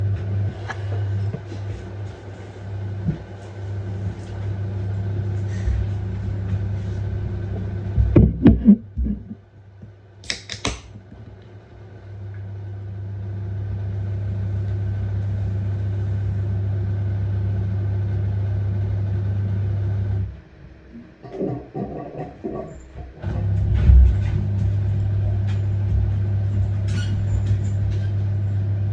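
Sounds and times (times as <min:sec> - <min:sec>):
washing machine humming: 0:00.0 - 0:28.9
clattering knocks: 0:08.0 - 0:09.4.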